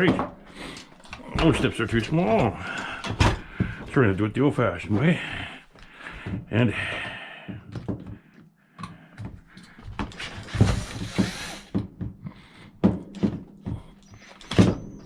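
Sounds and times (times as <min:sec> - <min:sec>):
plastic scraping: 0:00.0 - 0:06.6, 0:09.6 - 0:15.0
knocks and clicks of handling: 0:00.0 - 0:15.0.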